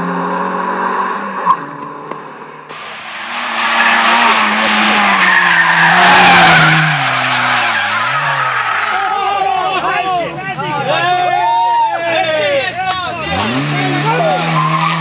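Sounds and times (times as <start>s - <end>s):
rally car engine slowing: 0.0s - 11.4s
tyres skidding: 0.0s - 15.0s.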